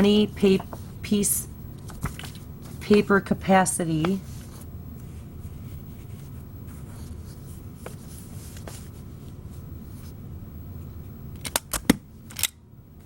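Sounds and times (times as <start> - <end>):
paper rustling: 1.8 - 3.0, 4.2 - 9.0.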